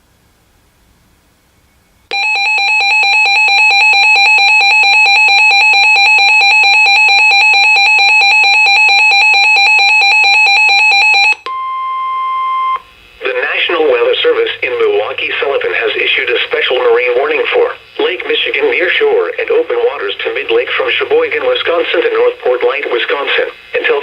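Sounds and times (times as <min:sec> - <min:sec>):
harsh two-tone alarm: 0:02.1 - 0:12.8
steady single alarm tone: 0:02.1 - 0:12.8.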